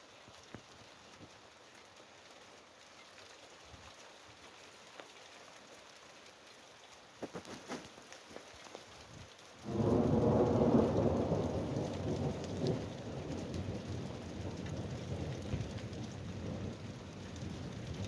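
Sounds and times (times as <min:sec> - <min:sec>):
steady rain: 0:00.0 - 0:18.0
thunderclap rumbling: 0:09.7 - 0:18.0.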